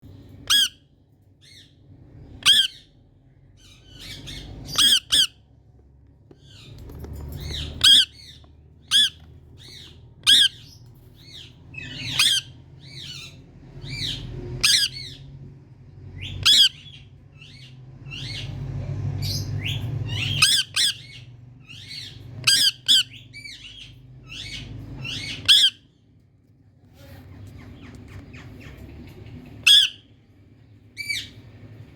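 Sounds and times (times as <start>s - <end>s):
parrot squawking: 0.4s - 0.9s, 2.4s - 2.9s, 3.6s - 5.5s, 7.4s - 15.3s, 16.2s - 18.5s, 19.3s - 26.0s, 29.6s - 30.1s.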